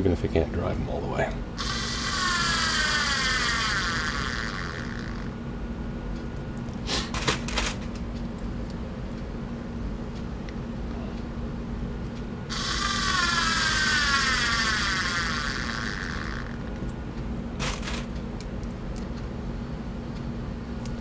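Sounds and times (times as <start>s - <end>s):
cordless screwdriver motor whine: 1.6s - 5.3s, 12.5s - 16.6s
short noisy burst: 12.5s - 16.6s.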